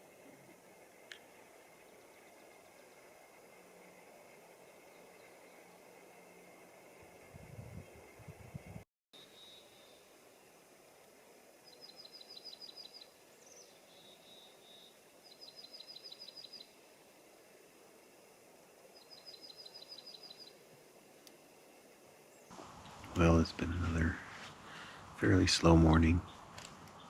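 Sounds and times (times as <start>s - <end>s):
faint steady hiss: 0.0s - 27.0s
songbird trilling: 11.7s - 16.8s, 19.0s - 20.6s.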